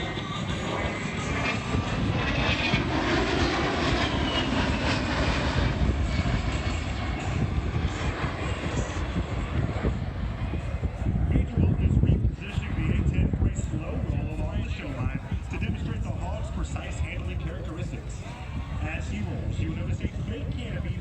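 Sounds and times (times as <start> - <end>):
jet passing overhead: 0.0 - 21.0.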